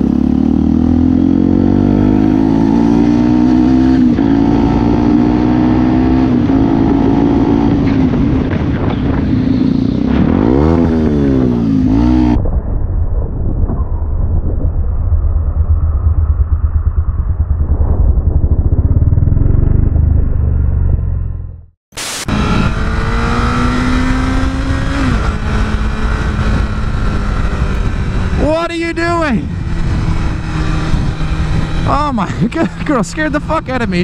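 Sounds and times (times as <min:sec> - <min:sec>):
motorcycle engine revving: 0:00.0 - 0:12.4, 0:15.6 - 0:34.0
muffled pulsing engine rumble: 0:07.7 - 0:21.7.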